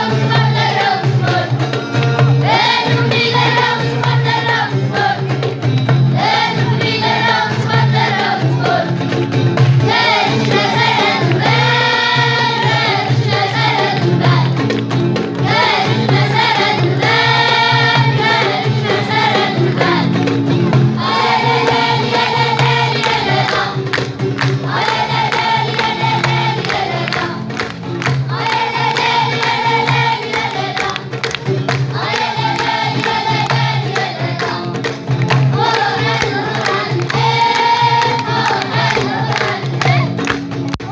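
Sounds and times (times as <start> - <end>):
vocal ensemble singing: 0.0 - 40.9.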